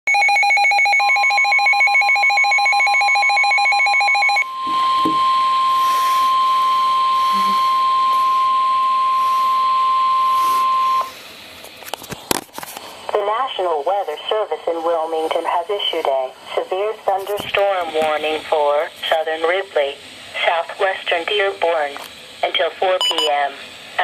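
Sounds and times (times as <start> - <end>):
steady warning alarm tone: 0.1 - 11.2, 23.0 - 23.4
radio hiss: 5.7 - 24.0
warbling two-pitched alert tone: 7.3 - 7.7.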